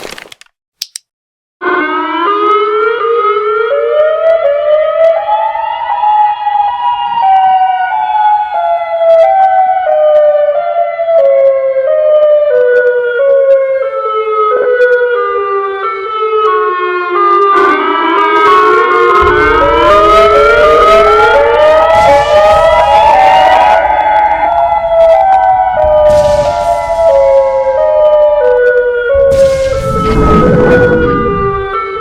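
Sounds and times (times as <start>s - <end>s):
siren-like tone stepping in pitch: 18.4s - 32.0s.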